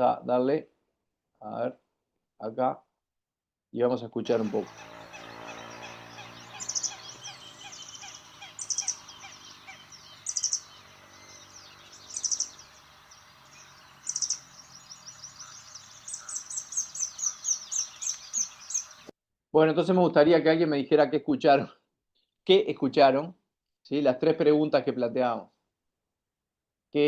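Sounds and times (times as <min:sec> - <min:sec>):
motorcycle engine passing: 0:04.2 - 0:19.1
bird calling: 0:04.3 - 0:19.1.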